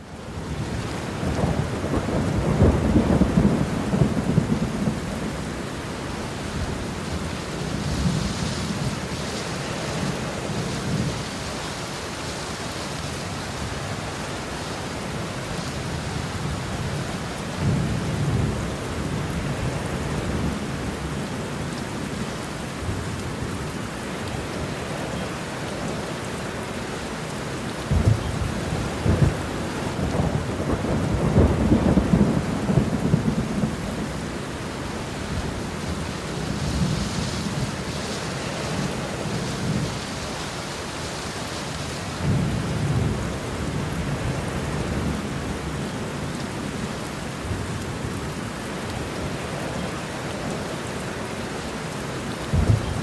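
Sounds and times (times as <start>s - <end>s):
steady rain: 0.0s - 53.0s
thunder rumbling: 0.3s - 11.4s, 27.8s - 40.9s, 52.4s - 53.0s.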